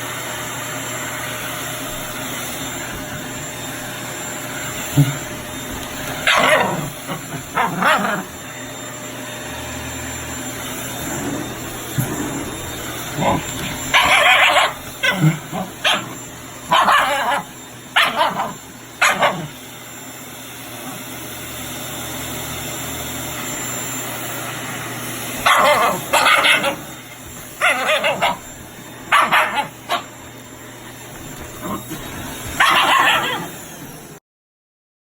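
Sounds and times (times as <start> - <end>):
vacuum cleaner running: 0.0 - 34.2
dog barking: 4.8 - 8.3, 13.0 - 19.6, 25.4 - 30.2, 31.2 - 33.7.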